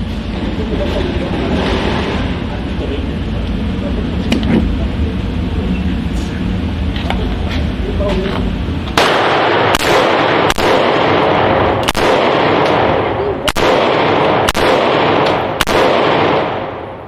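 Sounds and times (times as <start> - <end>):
loud echoing noise: 0.0 - 17.0
gunshots: 9.0 - 17.0.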